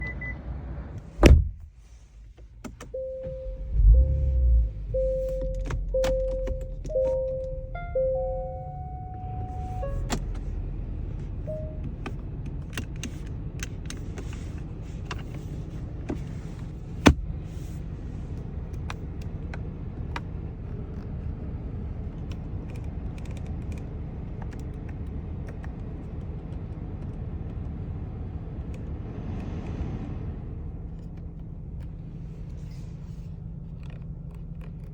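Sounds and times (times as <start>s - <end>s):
car engine idling: 1.0s - 22.9s.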